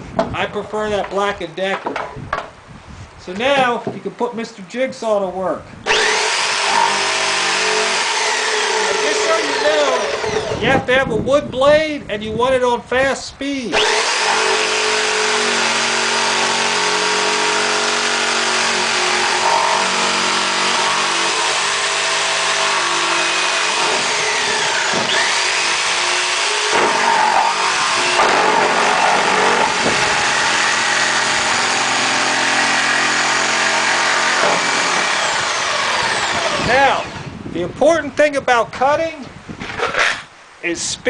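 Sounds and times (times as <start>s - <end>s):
jigsaw cutting wood: 5.9s - 10.7s, 13.7s - 37.3s.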